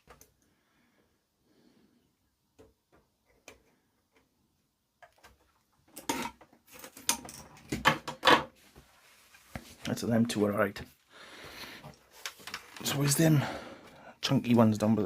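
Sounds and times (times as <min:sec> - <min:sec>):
parts clattering on workbench: 0:05.9 - 0:08.6.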